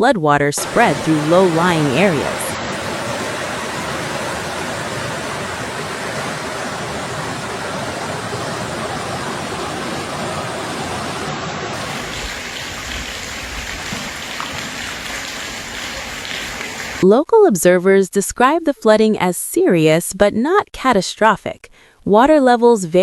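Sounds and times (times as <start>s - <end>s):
rushing floodwater: 0.6s - 17.0s.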